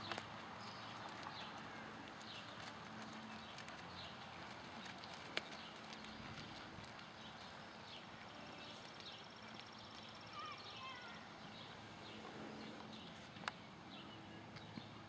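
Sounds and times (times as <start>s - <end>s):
horse hooves clopping: 0.0s - 11.0s.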